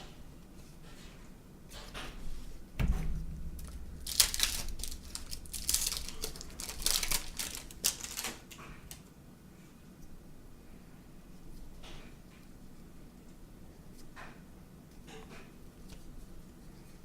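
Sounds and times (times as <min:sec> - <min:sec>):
low thump: 0:02.8 - 0:04.1
wrapper tearing: 0:03.6 - 0:09.0
paper and plastic rustling: 0:03.6 - 0:09.1.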